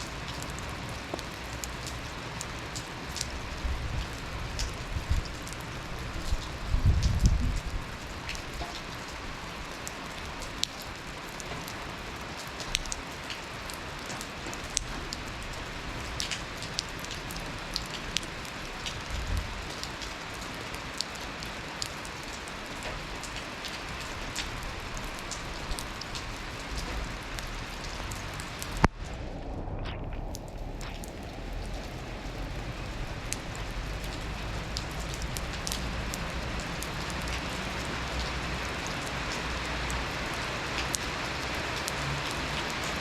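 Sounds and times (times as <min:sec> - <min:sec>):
rain falling: 0:00.0 - 0:43.0
raindrop ticks: 0:00.0 - 0:43.0
brief low rumble: 0:28.8 - 0:33.5.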